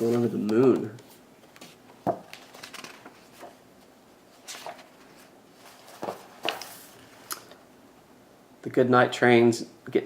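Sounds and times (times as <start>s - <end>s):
page turning: 0.0s - 3.6s, 4.4s - 7.6s
paper rustling: 0.0s - 7.4s.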